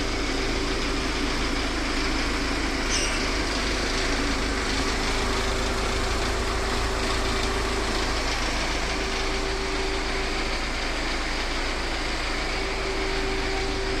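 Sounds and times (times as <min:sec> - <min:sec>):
car engine running: 0:00.0 - 0:14.0.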